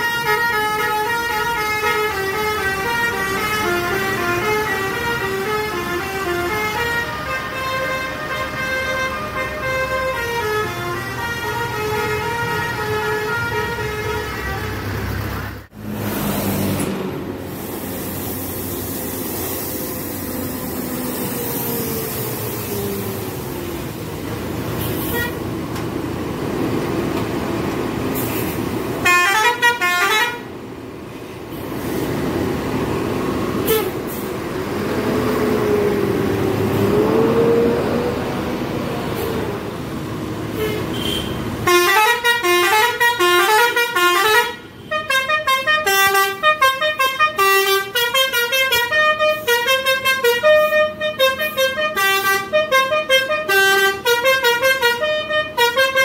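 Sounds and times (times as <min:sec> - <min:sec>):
bus musical horn melody: 0:00.0 - 0:15.1, 0:24.8 - 0:25.5, 0:29.0 - 0:30.5, 0:33.6 - 0:34.2, 0:40.5 - 0:56.0
traffic noise: 0:00.0 - 0:56.0
engine noise: 0:00.3 - 0:55.9.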